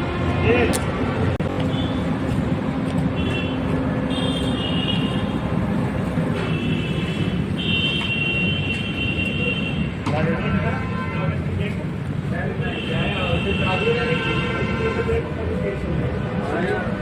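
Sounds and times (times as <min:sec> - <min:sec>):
road traffic rumble: 0:00.0 - 0:17.0.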